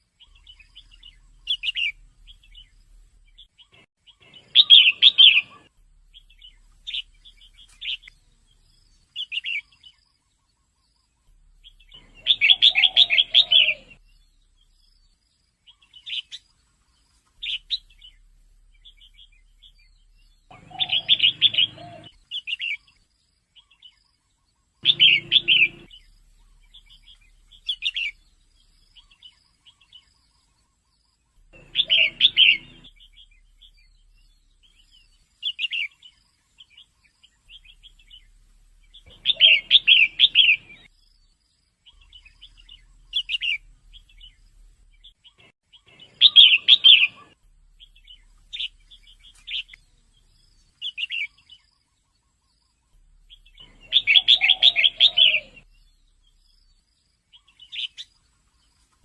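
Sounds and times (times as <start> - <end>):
bulbul chirping: 0.2 - 8.4, 17.4 - 22.9, 24.8 - 30.1, 31.3 - 41.2, 41.9 - 51.7, 52.9 - 56.6.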